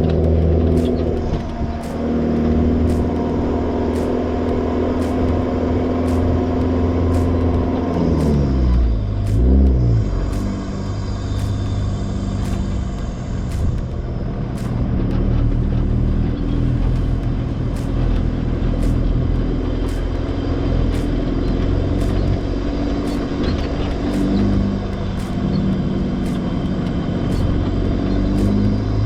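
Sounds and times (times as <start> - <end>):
road rumble: 0.0 - 29.0
vehicle engine running: 0.0 - 29.0.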